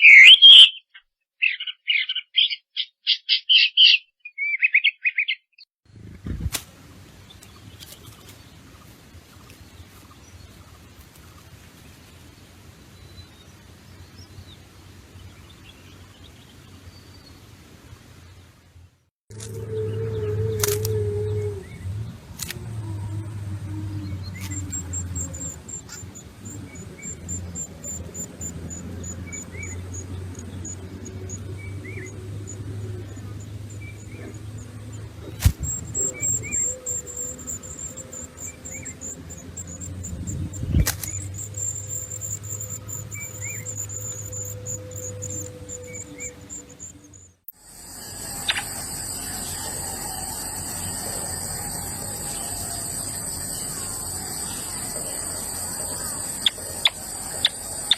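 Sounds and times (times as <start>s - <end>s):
low hum: 19.3s - 57.9s
insect chirring: 22.4s - 57.9s.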